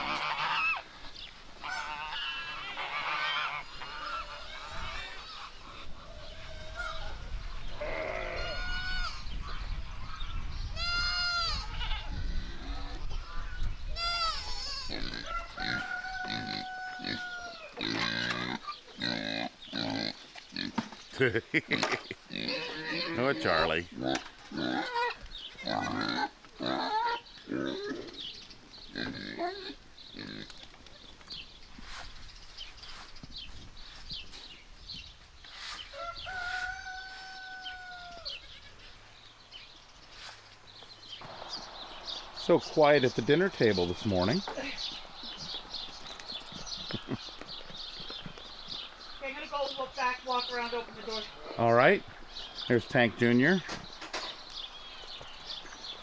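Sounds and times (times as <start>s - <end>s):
farm animal whining: 0.0s - 0.9s, 1.6s - 20.8s, 22.3s - 30.8s, 35.6s - 39.2s
livestock bleating: 7.8s - 9.2s, 10.7s - 12.2s, 13.9s - 18.5s.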